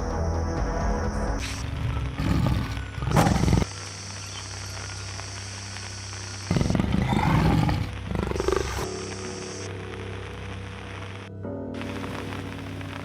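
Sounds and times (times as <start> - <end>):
tiger roaring: 1.8 - 3.7, 6.5 - 8.9.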